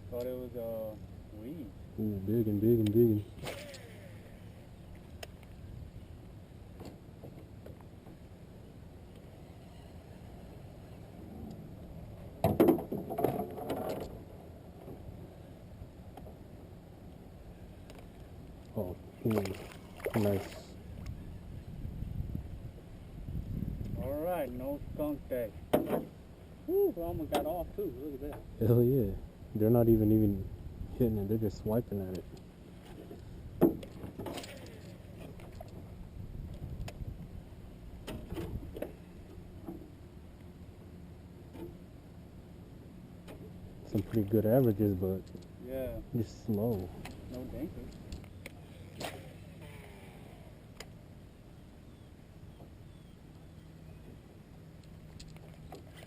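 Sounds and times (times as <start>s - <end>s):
wind and water wash: 0.0s - 56.0s
steady low hum: 14.0s - 56.0s.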